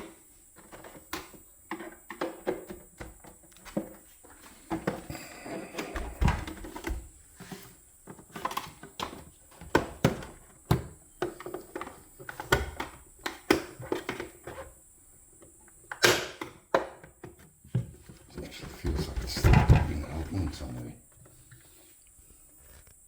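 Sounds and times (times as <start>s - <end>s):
plastic cover clicking and knocking: 8.1s - 14.3s.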